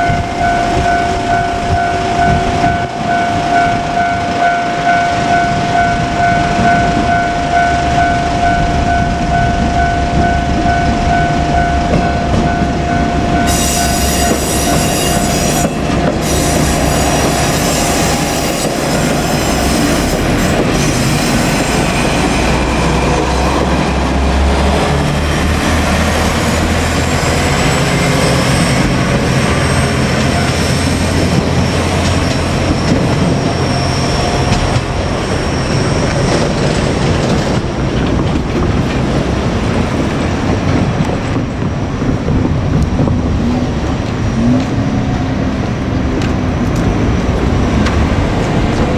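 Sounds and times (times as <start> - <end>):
high-pitched wheel squeal: 0.0 - 23.7, 25.3 - 37.1
level-crossing bell ringing: 0.0 - 24.0, 25.3 - 37.0
diesel railcar engine rumble: 0.0 - 48.9
wheels on rails: 0.0 - 48.9.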